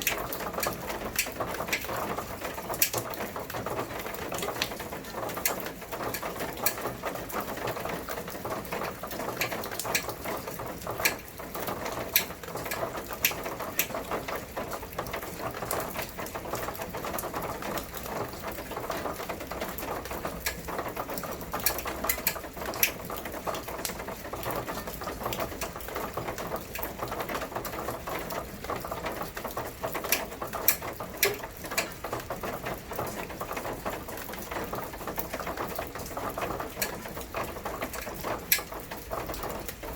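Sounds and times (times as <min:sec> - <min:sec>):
sharp ticks of raindrops: 0:00.0 - 0:39.9
steady rain: 0:00.0 - 0:39.9.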